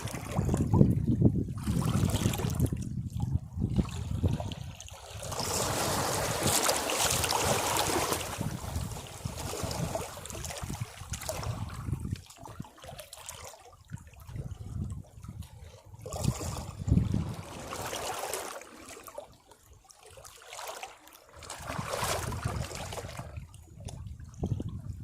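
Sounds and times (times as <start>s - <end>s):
waves breaking on rocks: 5.2s - 10.7s.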